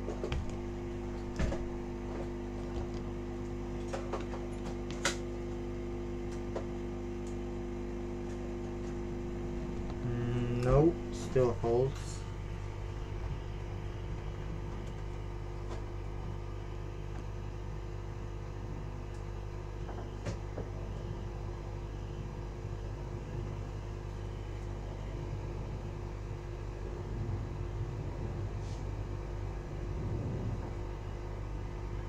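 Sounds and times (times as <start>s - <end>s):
small electric motor humming: 9.4s - 12.8s.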